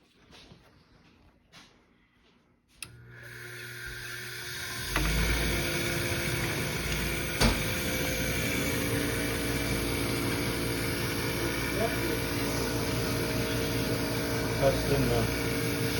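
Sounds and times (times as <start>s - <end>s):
furnace motor humming: 2.8s - 15.9s
furnace switch clicks: 4.8s - 8.6s.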